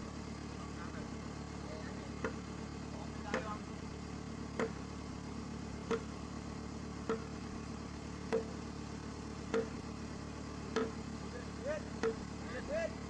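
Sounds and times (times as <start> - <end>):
steady engine hum: 0.0 - 13.0
hammer blows on metal: 8.3 - 8.6.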